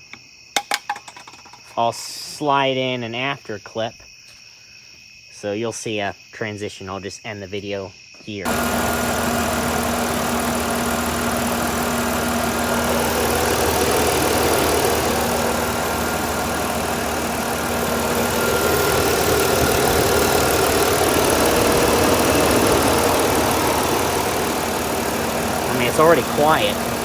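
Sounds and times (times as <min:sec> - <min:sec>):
car engine idling: 0:08.5 - 0:27.0.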